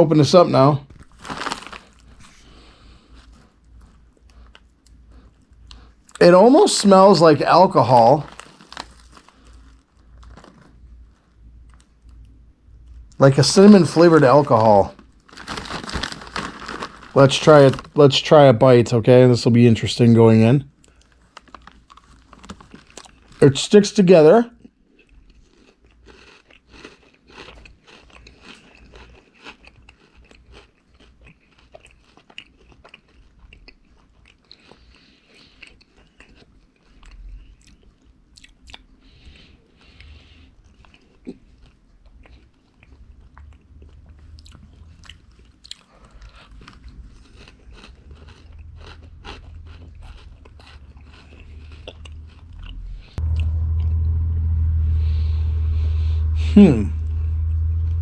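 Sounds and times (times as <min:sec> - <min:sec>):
cereal crunching and chewing: 0:00.8 - 0:18.2, 0:20.7 - 0:23.8, 0:24.5 - 0:53.5
loud low rumble: 0:52.3 - 0:58.0.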